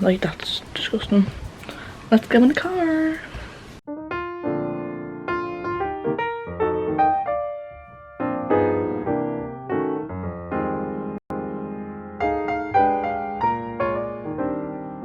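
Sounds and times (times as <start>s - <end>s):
piano music: 3.9s - 15.0s.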